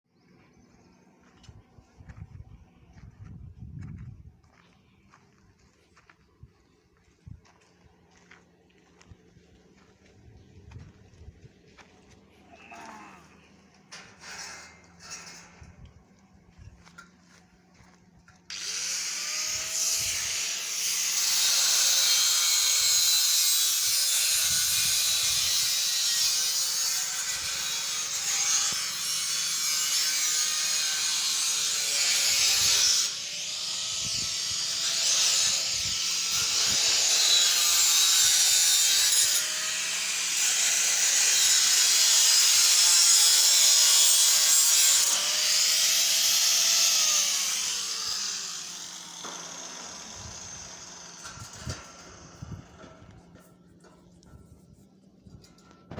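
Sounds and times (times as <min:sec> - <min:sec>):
angle grinder grinding metal: 0:12.8 - 0:15.6, 0:18.5 - 0:53.4.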